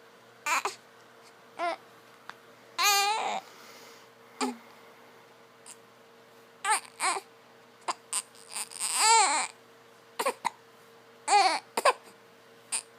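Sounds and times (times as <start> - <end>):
baby squeaking: 7.9 - 9.5.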